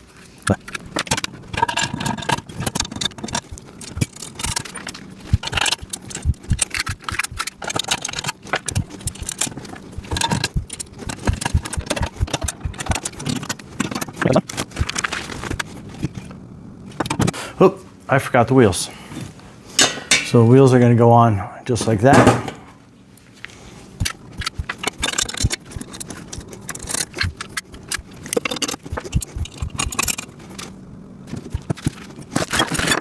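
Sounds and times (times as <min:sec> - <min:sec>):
steel parts clinking and rattling: 0:00.5 - 0:16.2, 0:24.0 - 0:30.7, 0:31.3 - 0:33.0.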